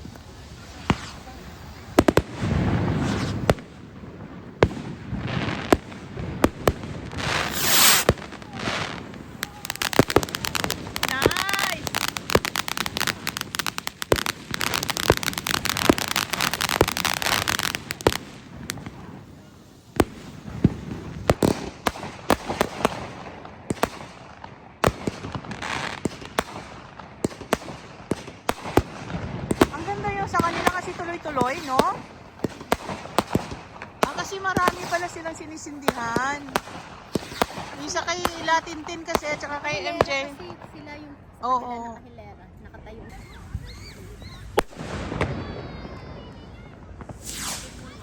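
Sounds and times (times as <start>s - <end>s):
crackling pops: 0.0s - 3.8s, 5.6s - 19.0s, 27.3s - 40.9s, 44.4s - 45.3s, 46.9s - 48.0s
fireworks hissing whooshes: 0.0s - 23.3s, 28.2s - 41.0s, 43.1s - 48.0s
fireworks bangs: 0.0s - 42.0s, 42.7s - 48.0s.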